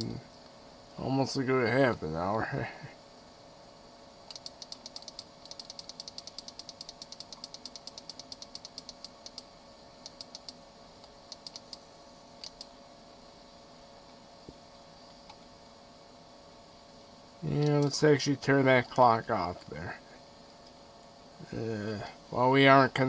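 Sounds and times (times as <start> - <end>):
computer mouse clicks: 4.3 - 11.8, 12.4 - 12.7, 17.6 - 17.9.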